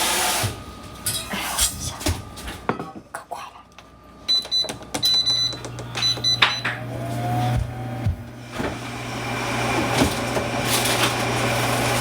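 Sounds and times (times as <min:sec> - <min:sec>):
low electrical hum: 0:00.5 - 0:09.3
electronic appliance beeping: 0:04.3 - 0:09.7.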